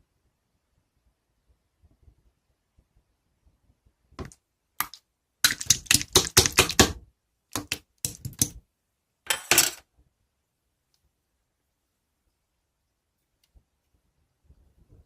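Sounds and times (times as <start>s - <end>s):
slime crackling and popping: 4.8s - 7.0s, 7.6s - 8.6s.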